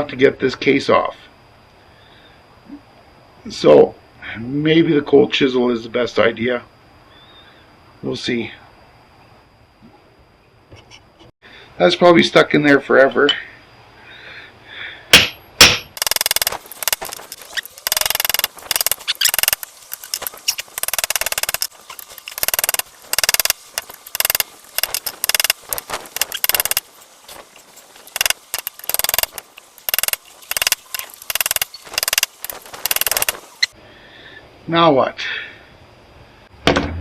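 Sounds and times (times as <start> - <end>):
hammer striking chisel on metal: 15.1 - 15.9.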